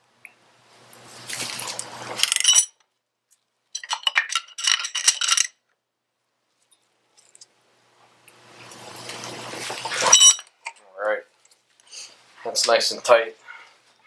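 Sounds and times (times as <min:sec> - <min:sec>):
metal tools clinking: 0:02.1 - 0:02.8, 0:03.8 - 0:05.6, 0:10.0 - 0:10.8
metallic ring: 0:10.0 - 0:10.5.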